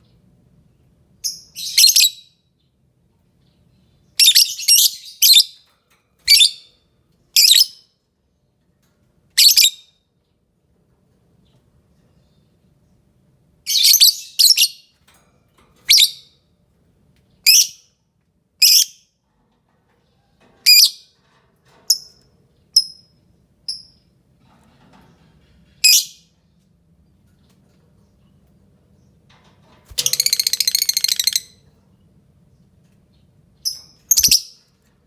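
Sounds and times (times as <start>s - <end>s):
lovebird shrill chirps: 29.9s - 31.6s, 33.6s - 34.6s.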